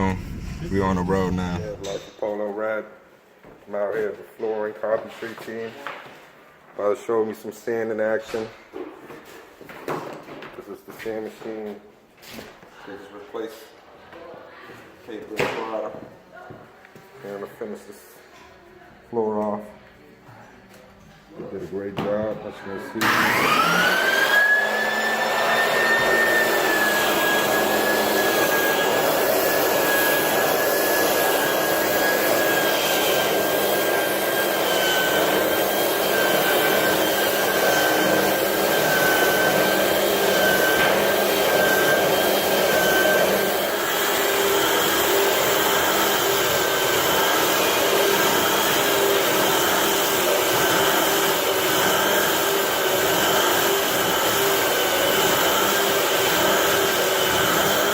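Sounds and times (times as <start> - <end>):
floor sanding machine running: 23.0 - 57.9.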